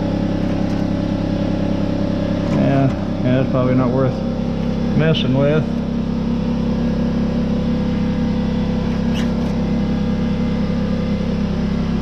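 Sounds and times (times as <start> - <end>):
motor humming: 0.0 - 12.0
faint high squeak: 8.9 - 9.6.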